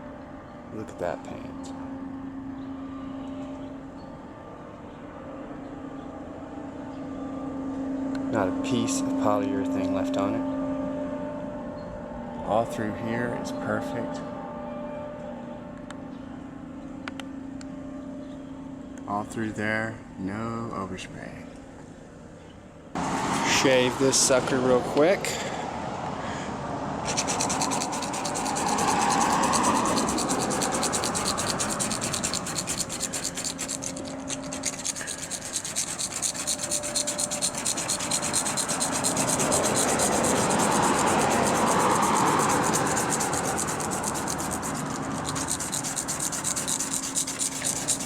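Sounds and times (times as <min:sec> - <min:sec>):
razor blade scraping: 0:27.0 - 0:48.0.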